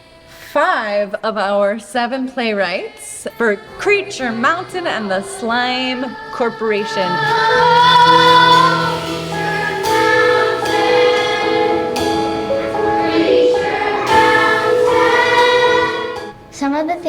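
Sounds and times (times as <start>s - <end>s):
group of voices singing: 2.4s - 16.5s
musical accompaniment: 4.7s - 17.0s.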